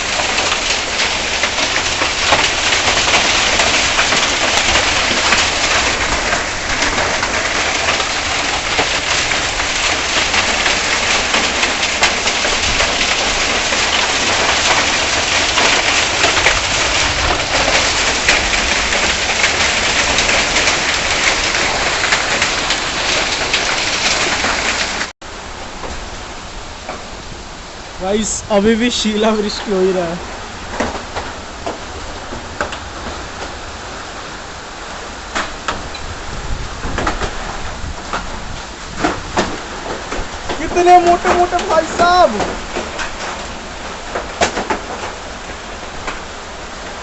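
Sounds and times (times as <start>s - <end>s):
hail and heavy rain pelting: 0.0s - 47.0s.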